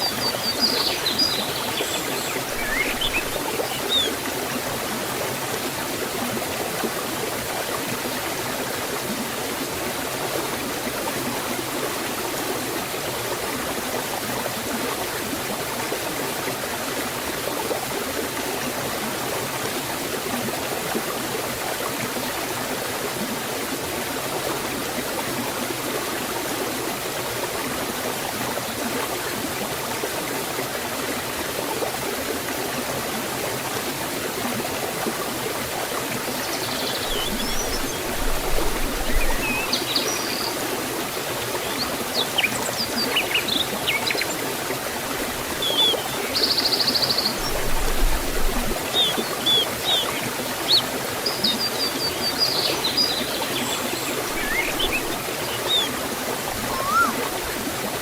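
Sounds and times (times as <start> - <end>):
waterfall rushing: 0.0 - 6.2, 36.4 - 58.0
short high falling chirp: 56.7 - 57.2.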